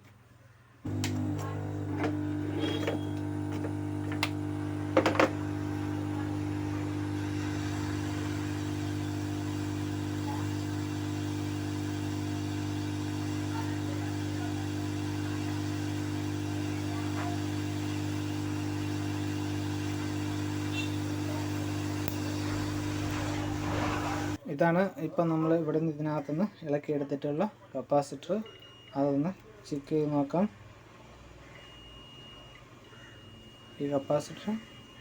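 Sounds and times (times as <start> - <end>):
hot-air blower humming: 0.9 - 24.4.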